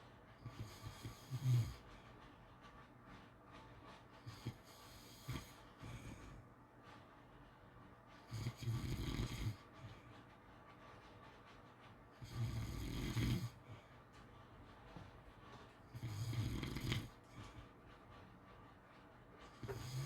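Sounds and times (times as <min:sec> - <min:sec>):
dog snoring: 0:00.4 - 0:01.9, 0:04.2 - 0:06.4, 0:08.3 - 0:10.0, 0:12.2 - 0:13.8, 0:15.9 - 0:17.6, 0:19.6 - 0:20.0.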